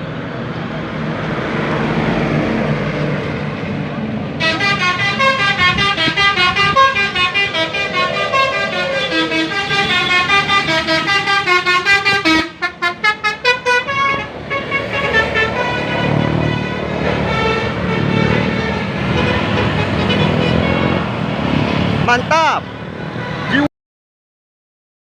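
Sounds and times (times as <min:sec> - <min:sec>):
musical air horn melody: 0:04.4 - 0:21.0
low rumble: 0:06.4 - 0:10.2.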